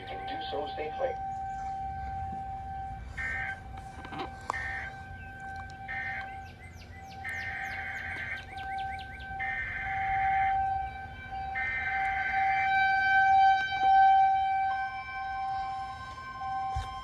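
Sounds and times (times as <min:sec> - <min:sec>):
birds chirping faintly: 0:00.0 - 0:03.8, 0:04.4 - 0:12.7
second siren tone: 0:00.0 - 0:17.0
warning siren steady tone: 0:00.0 - 0:17.0.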